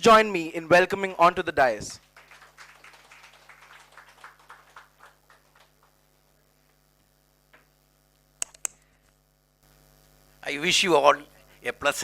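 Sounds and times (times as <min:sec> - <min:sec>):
electrical hum: 0:00.0 - 0:12.0
audience clapping: 0:02.0 - 0:06.4.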